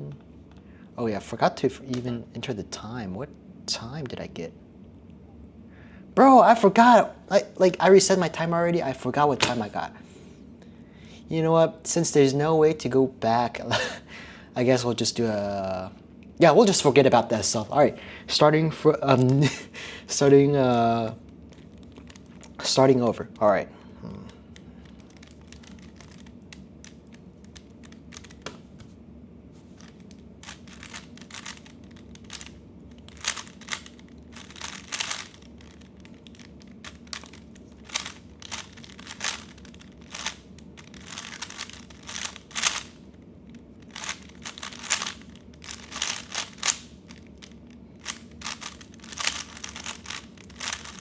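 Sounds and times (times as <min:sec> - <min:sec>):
puzzle cube plastic clicking: 0:21.5 - 0:22.6, 0:24.5 - 0:28.7, 0:29.8 - 0:51.0.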